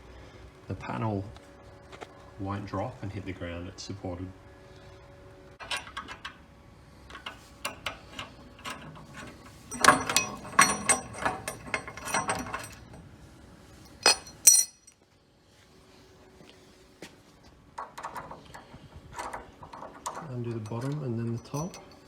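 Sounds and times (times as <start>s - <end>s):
small hard clicks and clinks: 7.1s - 13.0s, 13.9s - 15.0s, 17.8s - 22.0s.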